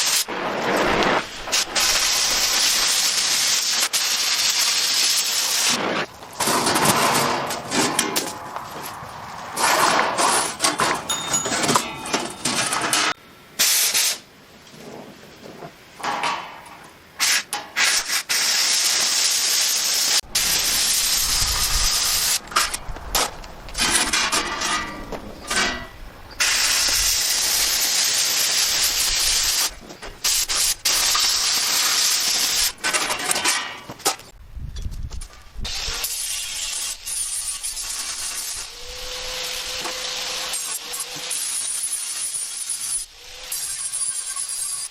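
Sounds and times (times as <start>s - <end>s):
welding arc crackling and hissing: 0.0s - 10.7s, 12.6s - 15.6s, 16.6s - 25.2s, 26.4s - 34.3s, 35.4s - 44.9s.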